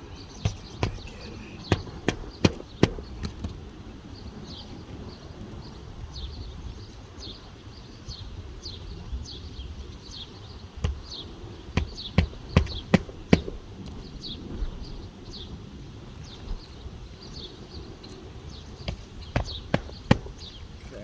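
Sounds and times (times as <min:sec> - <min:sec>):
hammer knocking on roof shingles: 0:00.3 - 0:03.6, 0:10.8 - 0:13.8, 0:18.9 - 0:20.9.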